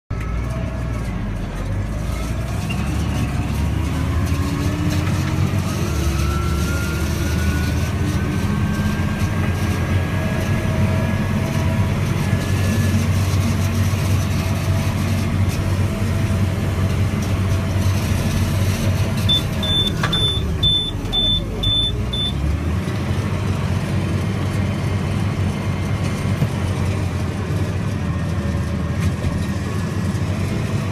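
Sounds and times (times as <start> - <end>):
tractor engine running under load: 0.1 - 30.9
machinery whines: 18.2 - 22.5
high electronic beep: 19.3 - 22.4.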